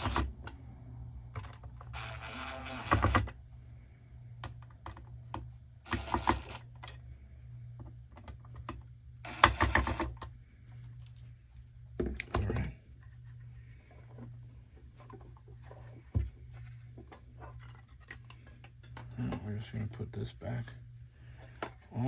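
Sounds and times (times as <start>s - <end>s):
screw gun driving screws: 0.0s - 0.3s, 2.0s - 3.3s, 5.9s - 6.7s, 9.2s - 10.1s.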